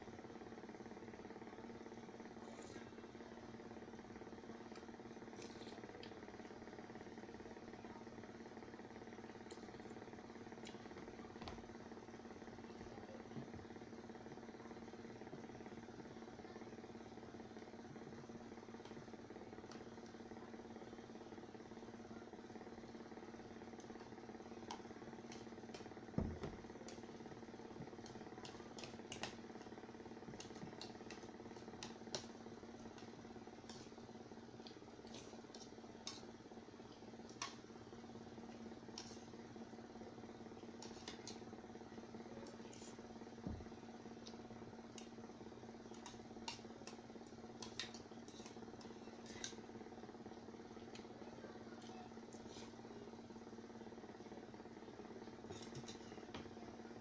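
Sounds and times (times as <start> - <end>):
steady low hum: 0.0 - 57.0
soft clicks of eating: 4.5 - 7.3, 9.2 - 11.7, 18.7 - 20.4, 23.6 - 52.9, 55.2 - 56.6
chewing and utensil clicks: 45.9 - 49.6.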